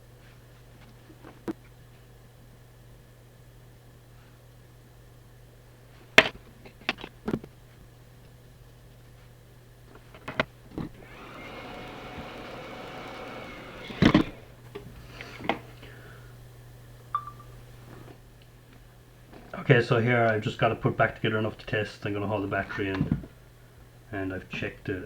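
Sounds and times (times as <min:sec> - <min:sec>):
low constant hum: 0:00.0 - 0:25.0
soft steady hiss: 0:00.0 - 0:25.0
small plastic parts clicking: 0:11.7 - 0:14.5.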